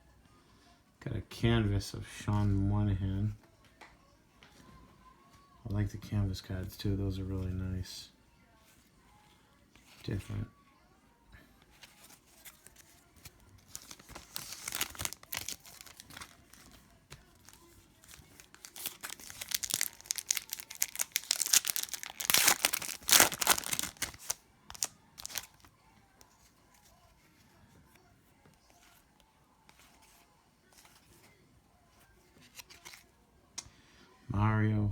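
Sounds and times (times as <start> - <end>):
wrapper being torn and crinkled: 12.0 - 25.7.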